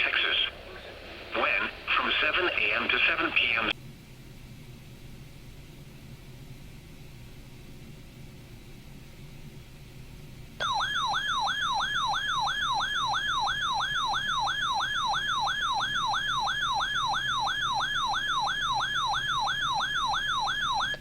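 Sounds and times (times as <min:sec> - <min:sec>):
electronic alert siren chirping: 0:10.6 - 0:21.0.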